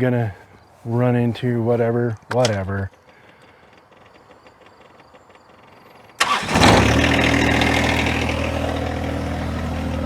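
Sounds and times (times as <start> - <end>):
diesel tractor engine starting and idling: 2.4 - 10.0.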